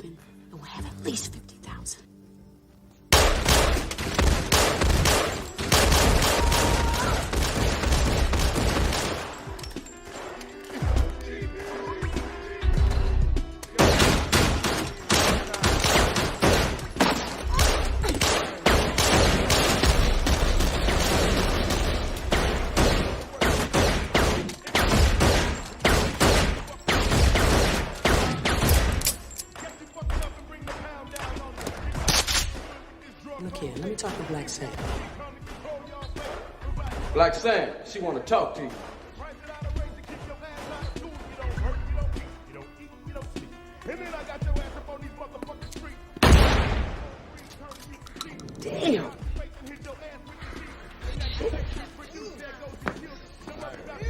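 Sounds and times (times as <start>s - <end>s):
guns firing in volleys: 3.1s - 9.5s, 13.8s - 29.2s, 46.2s - 47.1s.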